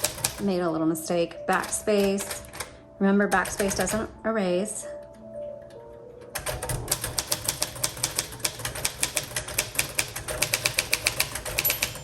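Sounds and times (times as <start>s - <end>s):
fast manual typewriter typing: 0.0s - 0.6s, 1.5s - 4.1s, 6.4s - 12.0s.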